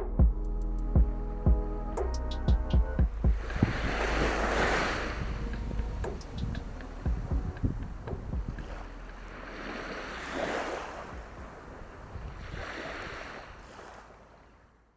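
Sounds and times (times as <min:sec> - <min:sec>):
wind thumping on microphone: 0:01.0 - 0:14.0
sea waves washing in: 0:02.0 - 0:14.8.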